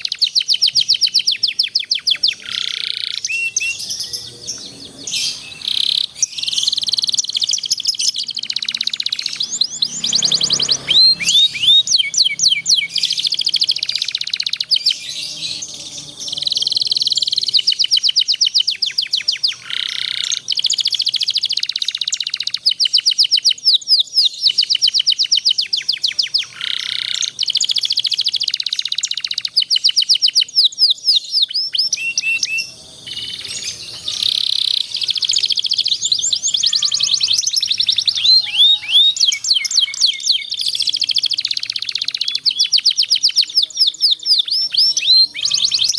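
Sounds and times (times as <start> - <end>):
canary singing trills and chirps: 0.0 - 45.9.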